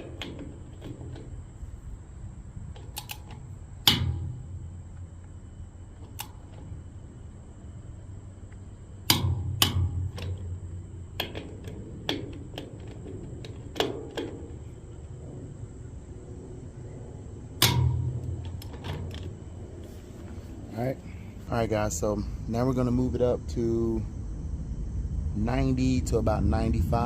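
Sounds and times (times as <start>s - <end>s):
metal knocks of wrench and socket: 0.0s - 1.4s, 2.7s - 5.1s, 9.0s - 14.7s, 17.6s - 19.4s
torque wrench clicking: 2.8s - 4.4s.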